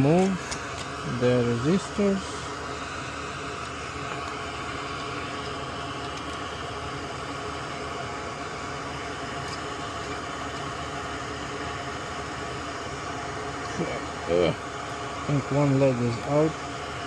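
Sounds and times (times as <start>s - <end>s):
faint constant hum: 0.0s - 17.0s
small electric fan whirring: 0.0s - 17.0s.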